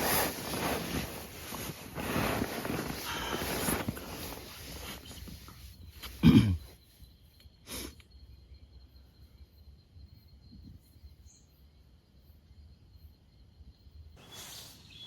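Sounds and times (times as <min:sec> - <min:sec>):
brief rustling: 0:00.0 - 0:06.2
crickets trilling: 0:00.0 - 0:15.0.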